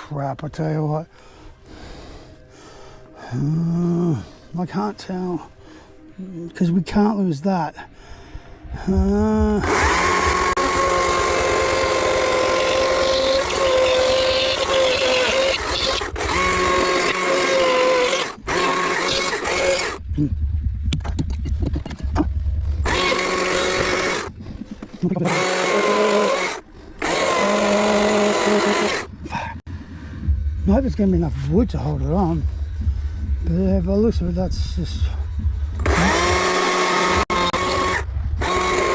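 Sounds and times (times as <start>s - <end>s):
chainsaw cutting wood: 9.6s - 20.0s, 22.8s - 24.3s, 25.2s - 29.2s, 35.8s - 38.9s
chainsaw idling: 9.6s - 20.0s, 22.8s - 24.3s, 25.2s - 29.1s, 35.8s - 38.9s.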